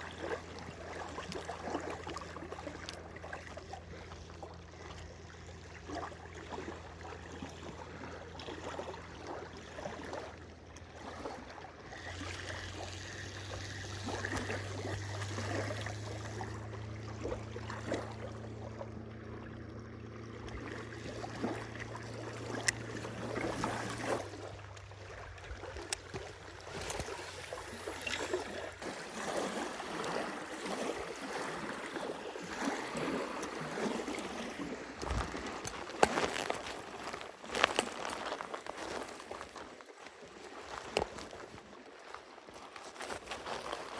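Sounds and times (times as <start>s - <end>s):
water lapping against a boat: 0.0s - 43.9s
steady low hum: 10.3s - 35.7s.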